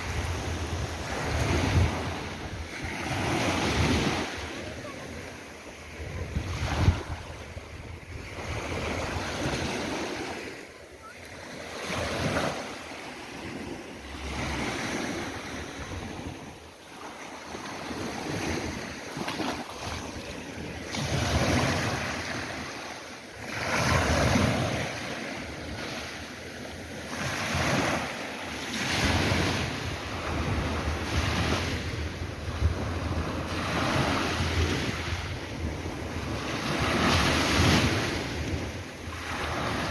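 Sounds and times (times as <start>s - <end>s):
wind on microphone: 0.0s - 4.8s, 5.8s - 10.5s, 28.8s - 39.9s
sea waves breaking: 0.0s - 39.9s.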